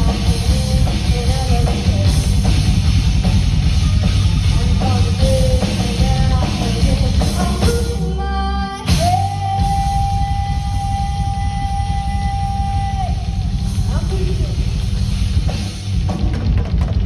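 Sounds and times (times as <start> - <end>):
person singing: 0.0 - 2.7, 4.4 - 14.3
rock band playing live: 0.0 - 17.0.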